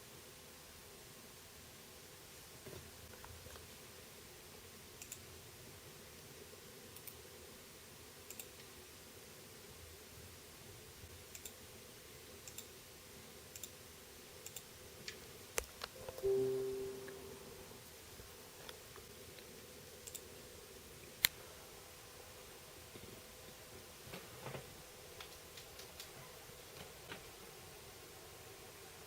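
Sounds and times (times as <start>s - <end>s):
short electronic tone: 16.0s - 17.6s.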